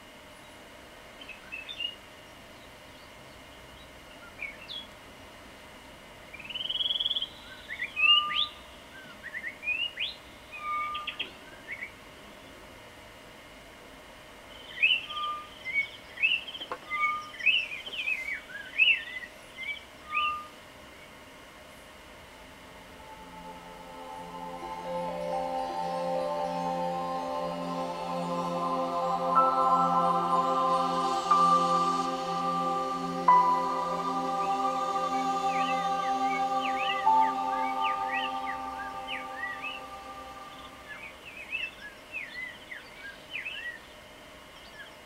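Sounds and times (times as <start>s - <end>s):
faint steady hum: 0.0s - 45.0s
bird chirps and trills: 23.0s - 43.8s.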